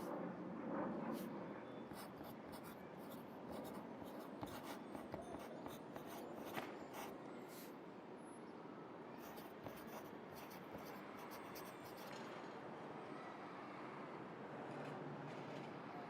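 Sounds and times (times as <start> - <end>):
city traffic hum: 0.0 - 13.0
pencil scratching on paper: 1.9 - 7.7, 9.2 - 12.1.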